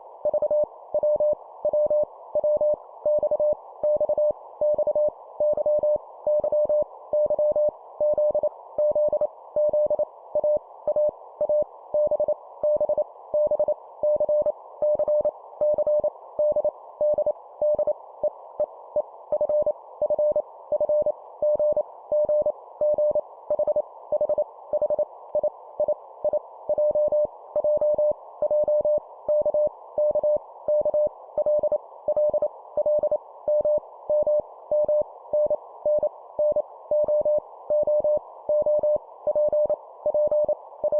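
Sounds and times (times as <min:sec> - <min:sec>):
morse code beeps: 0:26.7 - 0:40.9.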